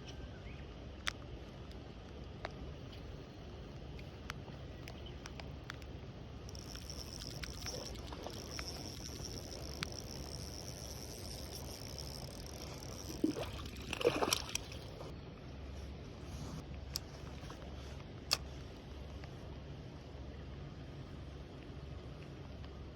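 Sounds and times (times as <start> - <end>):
steady low hum: 0.0 - 22.5
light clicks: 6.5 - 15.1
thin high whine: 6.5 - 15.1
water splashing and sloshing: 6.5 - 15.1.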